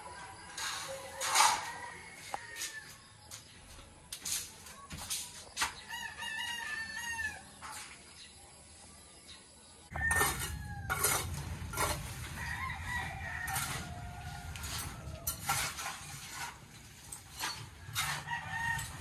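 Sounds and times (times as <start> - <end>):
roosters crowing: 0.0 - 3.0, 5.9 - 7.5, 9.9 - 15.9, 17.4 - 19.0
low background rumble: 9.9 - 15.6.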